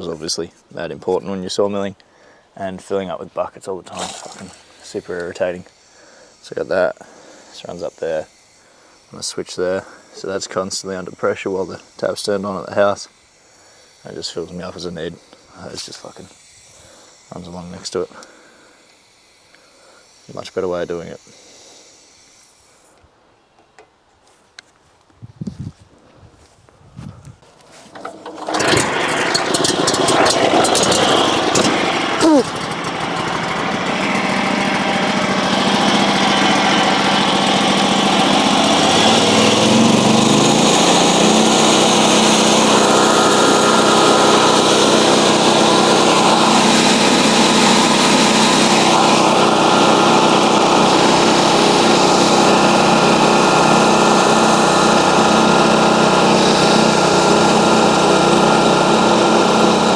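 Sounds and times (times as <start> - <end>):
small petrol engine running: 3.9 - 14.4, 27.9 - 59.9.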